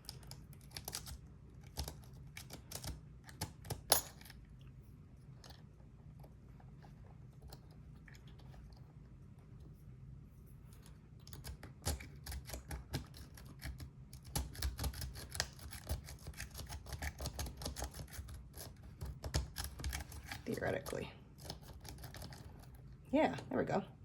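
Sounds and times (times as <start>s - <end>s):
lock pick clicking and scratching: 0.0s - 4.4s, 10.8s - 20.6s, 21.3s - 22.8s.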